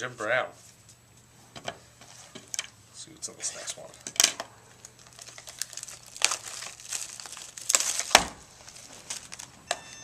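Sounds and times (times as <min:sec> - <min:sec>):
card pack wrapper crinkling and tearing: 0:04.8 - 0:09.6.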